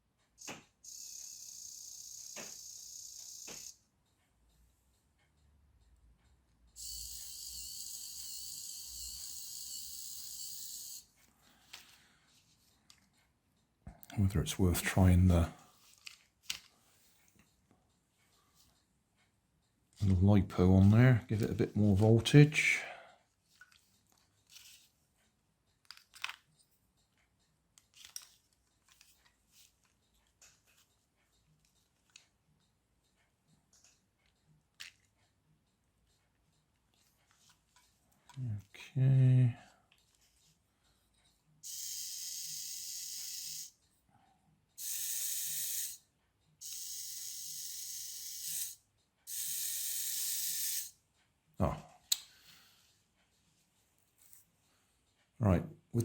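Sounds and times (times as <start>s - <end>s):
small electric motors whirring: 0.8s - 3.8s, 6.8s - 11.1s, 41.6s - 43.7s, 44.8s - 46.0s, 46.6s - 50.9s
scratchy handling of small parts: 15.7s - 17.5s, 23.5s - 25.0s, 25.8s - 26.8s, 27.8s - 31.0s.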